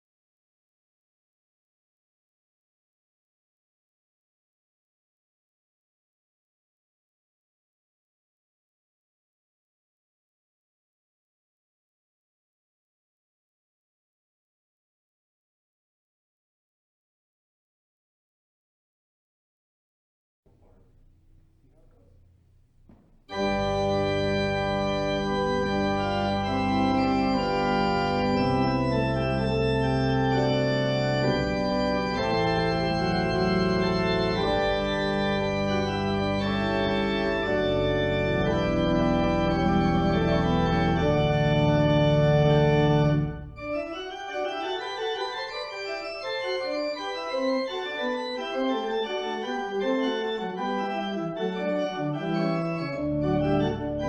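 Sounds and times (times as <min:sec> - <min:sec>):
organ music: 0:22.6 - 0:54.0.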